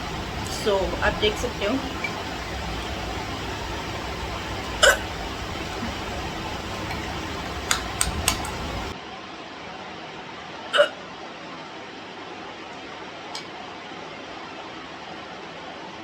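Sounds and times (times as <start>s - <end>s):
woman hiccuping: 4.8s - 5.1s, 10.8s - 11.0s
quick clicks: 6.9s - 8.9s.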